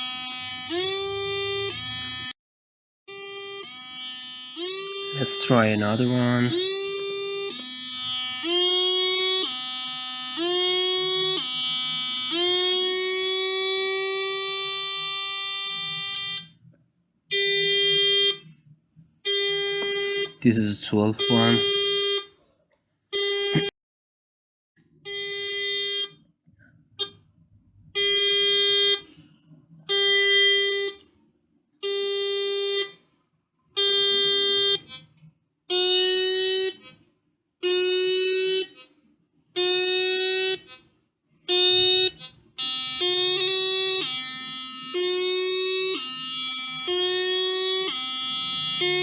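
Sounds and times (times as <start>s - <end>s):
two-tone alarm warble: 0.0s - 2.3s, 3.1s - 16.6s, 17.3s - 18.6s, 19.2s - 22.4s, 23.2s - 23.7s, 25.1s - 26.2s, 28.0s - 29.1s, 29.9s - 31.0s, 31.8s - 33.0s, 33.8s - 35.1s, 35.7s - 37.0s, 37.6s - 38.9s, 39.6s - 40.9s, 41.5s - 49.0s
buzzy alarm beep: 3.2s - 16.6s, 19.3s - 22.3s, 23.2s - 23.7s, 41.5s - 49.0s.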